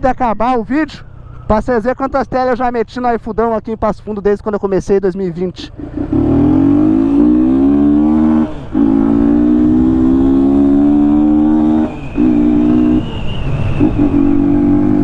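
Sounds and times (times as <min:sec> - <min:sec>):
motorcycle engine accelerating: 0:05.7 - 0:15.0.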